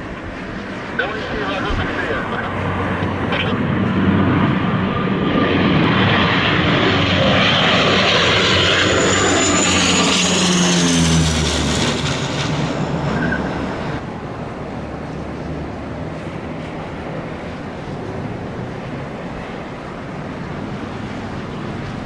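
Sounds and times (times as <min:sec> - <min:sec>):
airliner engines passing low: 0:00.0 - 0:22.0.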